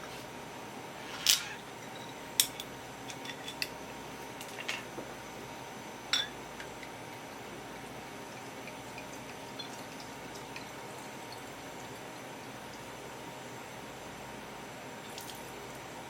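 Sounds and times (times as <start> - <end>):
dishes and utensils clinking: 6.1 - 6.7.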